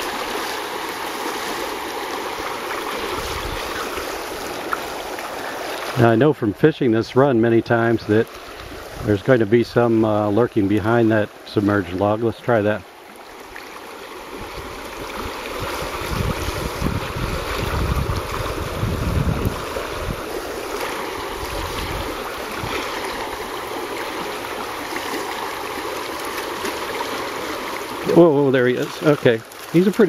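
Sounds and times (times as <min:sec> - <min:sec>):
stream rushing: 0:00.0 - 0:30.0
wind buffeting microphone: 0:03.0 - 0:04.4, 0:08.1 - 0:10.4, 0:14.4 - 0:20.5, 0:21.1 - 0:23.3.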